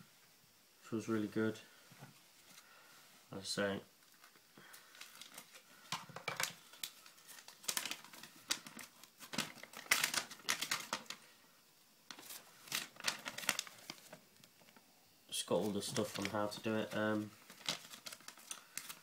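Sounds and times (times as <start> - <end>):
packaging crinkling and rustling: 4.0 - 11.3, 12.1 - 14.8, 15.5 - 19.0.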